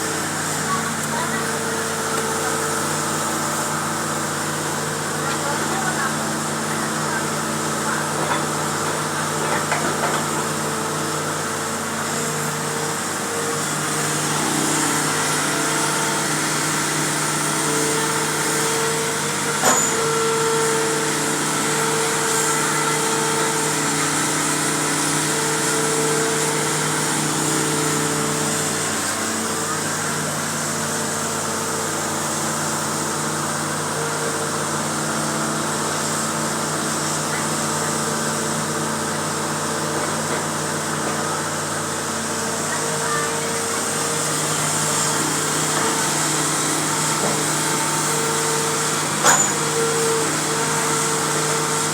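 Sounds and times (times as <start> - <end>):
excavator engine running: 0.0 - 51.9.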